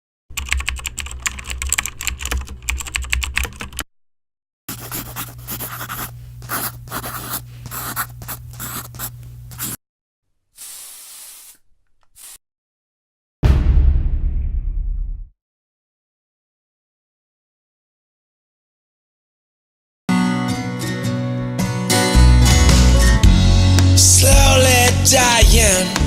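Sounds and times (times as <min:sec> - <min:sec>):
typing on computer keyboard: 0:00.3 - 0:03.8
steady low hum: 0:04.7 - 0:09.8
short soft hiss: 0:10.6 - 0:11.6.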